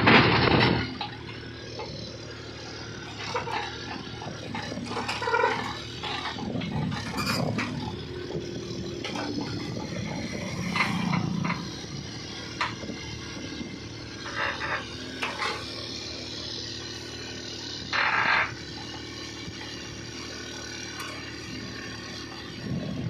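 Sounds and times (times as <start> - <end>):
knocks and clanks: 0.0 - 2.0, 3.1 - 15.7
mini excavator engine running: 0.0 - 23.0.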